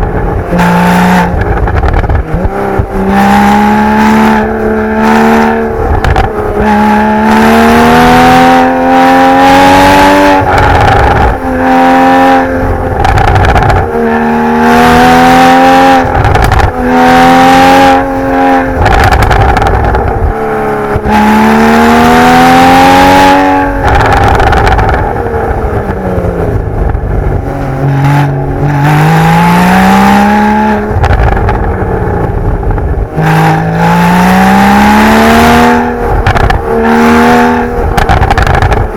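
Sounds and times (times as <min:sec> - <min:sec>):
exhaust pops and crackles: 0:00.0 - 0:03.2, 0:05.5 - 0:06.7, 0:10.3 - 0:11.6, 0:12.4 - 0:14.2, 0:15.8 - 0:17.0, 0:18.1 - 0:21.3, 0:23.4 - 0:28.8, 0:30.7 - 0:33.8, 0:35.6 - 0:38.9
car engine revving hard: 0:00.0 - 0:38.9.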